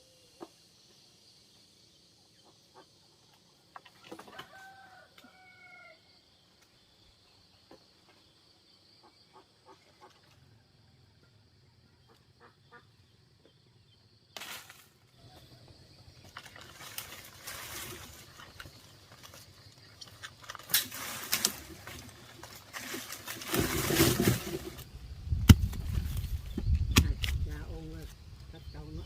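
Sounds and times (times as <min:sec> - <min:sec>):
faint rooster crowing: 0:04.1 - 0:06.2
rustling noise: 0:16.4 - 0:27.5.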